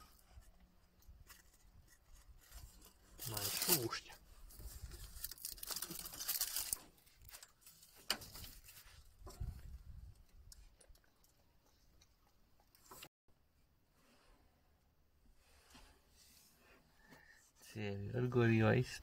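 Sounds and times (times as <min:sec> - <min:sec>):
hands scraping and rustling parts: 0:00.0 - 0:13.1.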